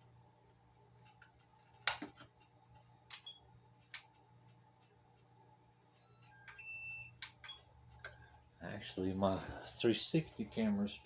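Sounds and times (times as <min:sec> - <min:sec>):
electronic beeps: 0:06.0 - 0:07.6.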